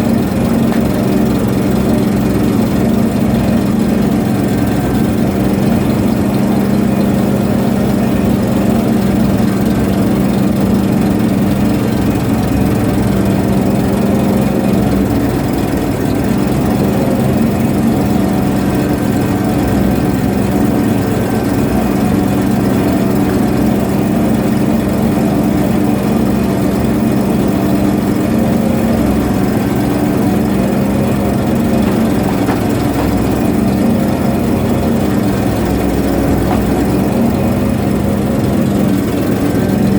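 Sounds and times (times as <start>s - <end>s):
ship engine droning: 0.0s - 39.9s.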